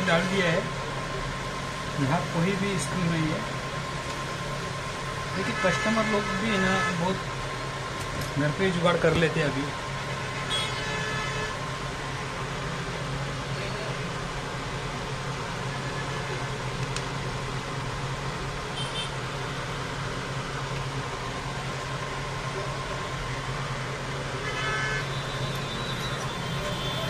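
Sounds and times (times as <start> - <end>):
traffic noise: 0.0 - 27.0
horn toots: 24.4 - 27.0.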